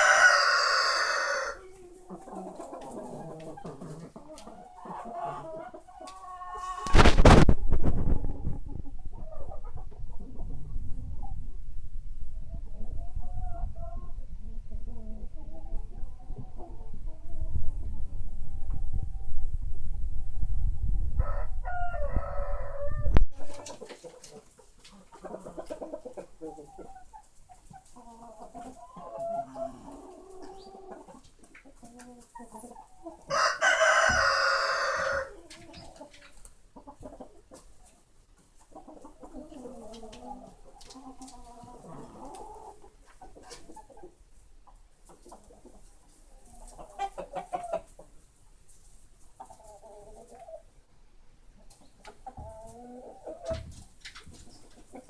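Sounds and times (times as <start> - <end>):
rooster crowing: 0.0 - 1.6, 21.2 - 23.1, 33.3 - 35.3
chickens clucking: 0.0 - 11.6, 12.3 - 19.3, 20.3 - 55.0.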